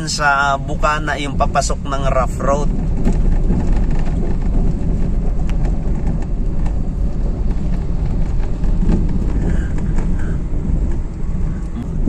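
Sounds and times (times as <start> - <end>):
vehicle engine and tyres rumbling: 0.0 - 12.0.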